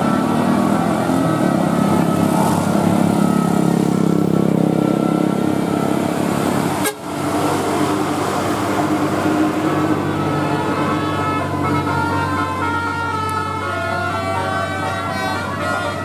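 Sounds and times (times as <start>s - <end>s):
road vehicle engines running: 0.0s - 16.0s
vehicle horns sounding: 6.6s - 7.6s, 9.5s - 16.0s.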